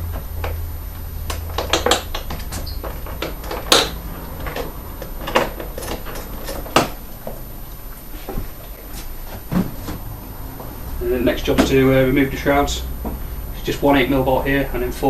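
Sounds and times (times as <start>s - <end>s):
seat being handled: 1.4s - 10.3s.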